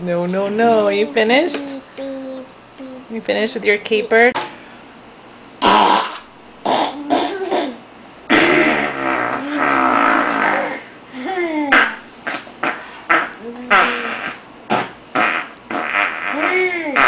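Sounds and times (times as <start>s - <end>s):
mouth fart sounds: 5.6s - 10.8s, 11.7s - 17.0s.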